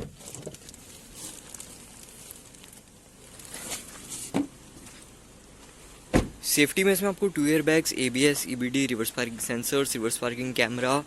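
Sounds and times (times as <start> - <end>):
shuffling steps: 0.1 - 6.0.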